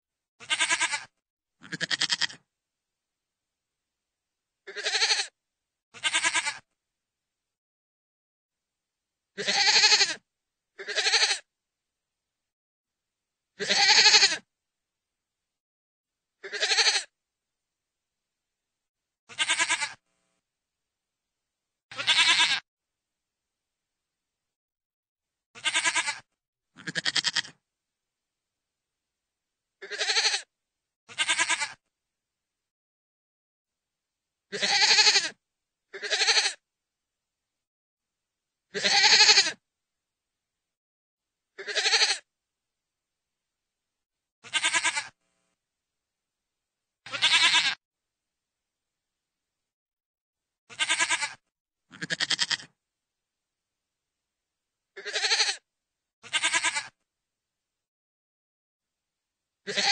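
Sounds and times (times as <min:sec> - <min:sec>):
goat bleating: 0:00.4 - 0:02.4, 0:04.7 - 0:06.7, 0:09.4 - 0:10.2, 0:10.8 - 0:11.5, 0:13.6 - 0:14.4, 0:16.4 - 0:17.1, 0:19.3 - 0:20.0, 0:21.9 - 0:22.6, 0:25.6 - 0:27.6, 0:29.8 - 0:30.5, 0:31.1 - 0:31.8, 0:34.5 - 0:36.6, 0:38.7 - 0:39.6, 0:41.6 - 0:42.3, 0:44.4 - 0:45.2, 0:47.1 - 0:47.8, 0:50.7 - 0:52.8, 0:55.0 - 0:57.0, 0:59.7 - 0:59.9.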